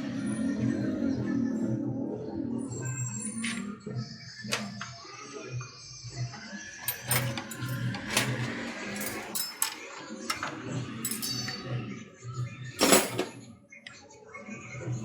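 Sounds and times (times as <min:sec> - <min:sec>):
metal tools clinking: 0:06.9 - 0:11.7, 0:12.8 - 0:13.4.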